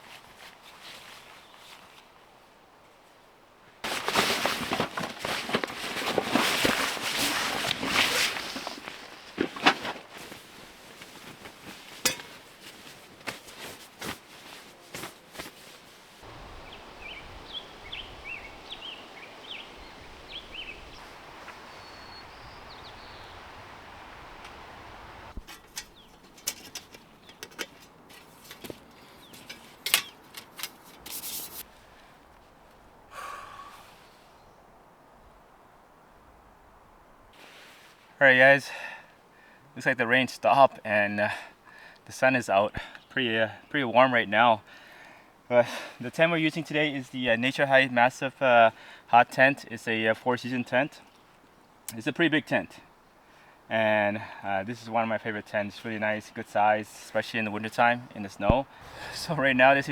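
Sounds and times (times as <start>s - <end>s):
camping gear rustling and knocking: 3.8s - 19.7s, 20.3s - 33.0s
small birds chirping: 16.2s - 26.4s, 27.0s - 27.6s, 28.8s - 30.3s.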